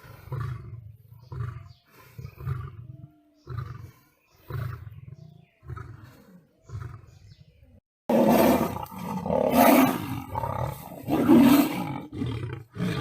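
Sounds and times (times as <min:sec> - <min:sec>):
big cat grunting roars: 0:00.0 - 0:07.4, 0:08.1 - 0:13.0
big cats roaring while fighting: 0:08.1 - 0:13.0.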